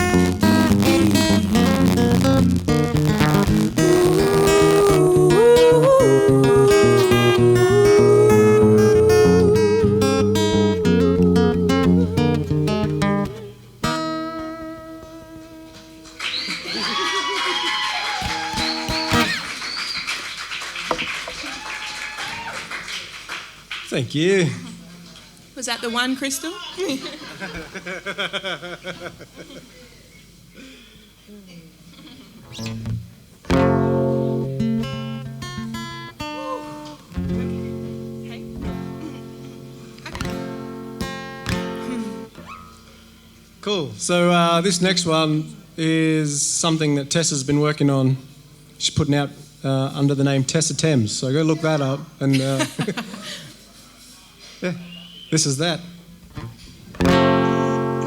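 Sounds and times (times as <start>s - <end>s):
acoustic guitar strumming: 0.0s - 16.5s, 18.2s - 19.6s, 32.4s - 45.3s, 55.8s - 58.0s
audience applause: 16.0s - 24.0s.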